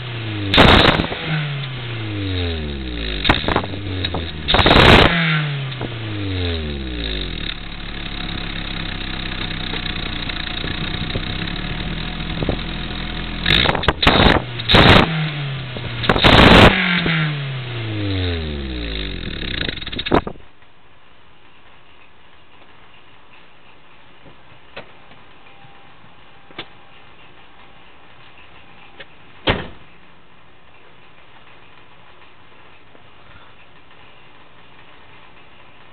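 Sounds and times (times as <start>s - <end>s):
car engine idling and revving: 0.0s - 20.4s.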